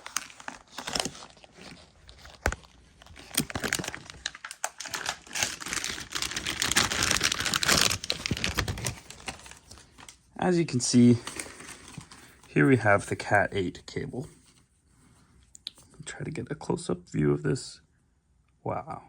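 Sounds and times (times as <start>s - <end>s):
plastic packaging crinkling: 0.0s - 13.6s.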